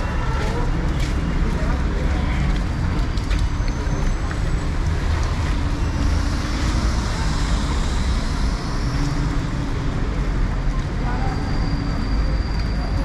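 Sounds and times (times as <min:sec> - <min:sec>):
traffic rumble: 0:00.0 - 0:13.0
traffic hiss: 0:04.3 - 0:13.0.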